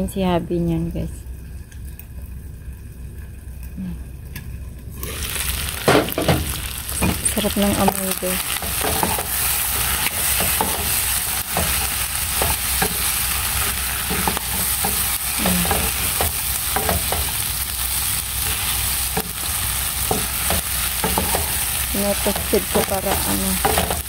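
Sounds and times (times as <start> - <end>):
meat sizzling in a pan: 4.9 - 24.0.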